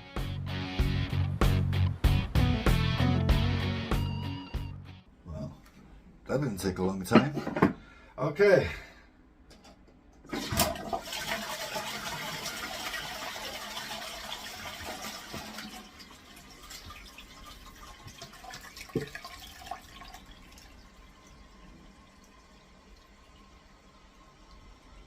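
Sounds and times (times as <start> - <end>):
toilet flushing: 10.2 - 25.0
water trickling: 11.0 - 25.0.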